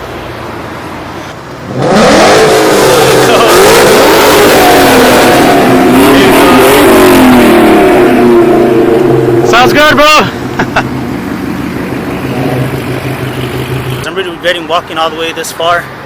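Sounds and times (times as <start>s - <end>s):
car engine revving loudly: 1.6s - 14.1s.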